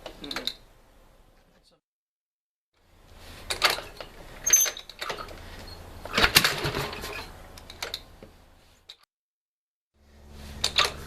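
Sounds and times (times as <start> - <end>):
motorcycle kick-start clatter: 3.5 - 8.1, 10.6 - 11.0.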